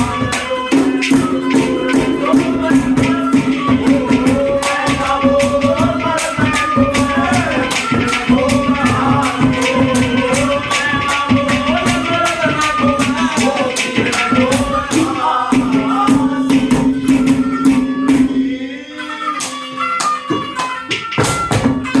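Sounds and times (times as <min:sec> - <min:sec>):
quick percussion strikes: 0:00.0 - 0:18.6, 0:19.4 - 0:22.0
folk melody: 0:00.0 - 0:22.0.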